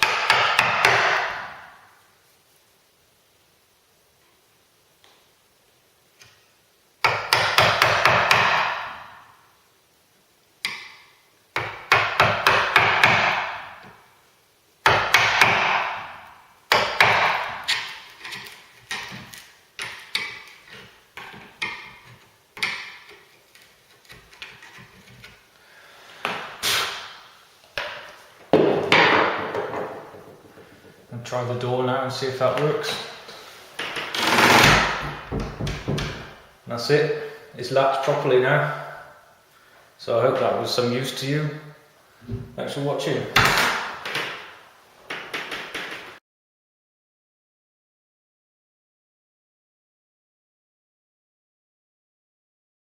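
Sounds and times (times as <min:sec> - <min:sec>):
hammer striking chisel: 0:00.0 - 0:01.6, 0:07.0 - 0:09.1, 0:11.6 - 0:13.8, 0:14.8 - 0:16.1, 0:16.7 - 0:19.2, 0:21.2 - 0:23.2.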